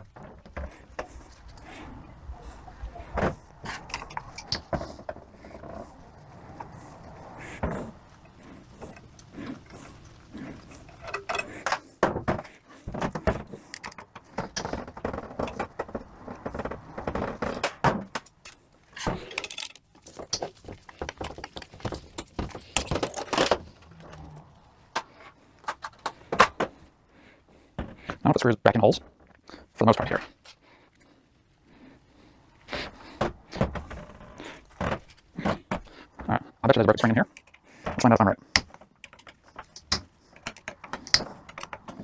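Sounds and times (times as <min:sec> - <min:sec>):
small metal parts clinking: 0:17.5 - 0:20.4, 0:37.0 - 0:42.0.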